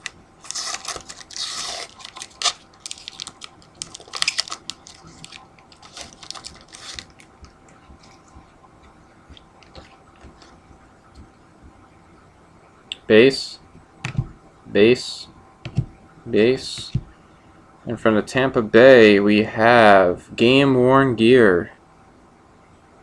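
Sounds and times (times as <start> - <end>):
wrapper tearing and crinkling: 0.0 - 7.2.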